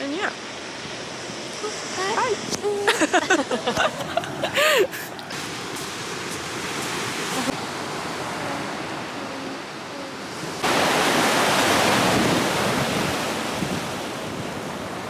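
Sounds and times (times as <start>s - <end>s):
sea waves washing on beach: 0.0s - 15.0s
wind buffeting microphone: 10.2s - 15.0s.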